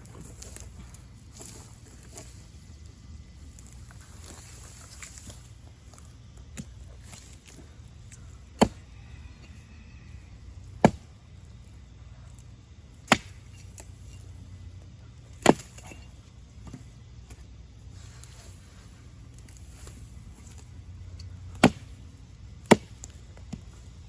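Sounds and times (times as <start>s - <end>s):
axe chopping into wood: 8.6s - 8.8s, 10.8s - 11.1s, 13.1s - 13.8s, 15.4s - 16.0s, 21.5s - 22.0s, 22.6s - 23.6s.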